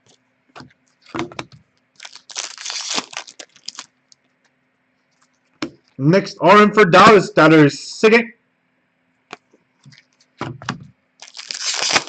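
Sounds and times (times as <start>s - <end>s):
foil wrapper crinkling and tearing: 2.0s - 4.1s, 11.2s - 12.0s.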